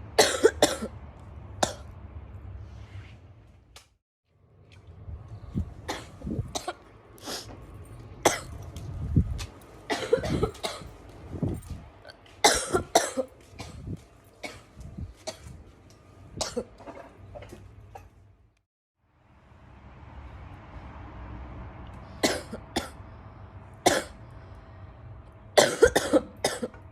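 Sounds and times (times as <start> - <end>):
girl coughing: 0.2 - 0.9, 9.9 - 10.9, 12.4 - 14.7, 22.2 - 23.0, 25.6 - 26.8.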